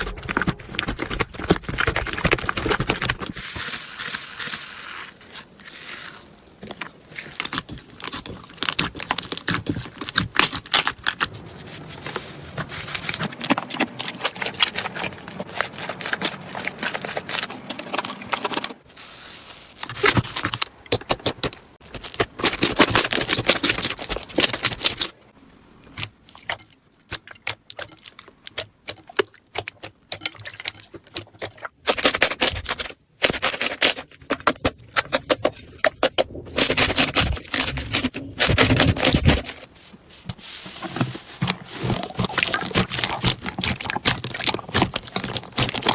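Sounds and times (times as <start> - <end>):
slime crackling and popping: 0.0 - 11.3, 41.8 - 45.9.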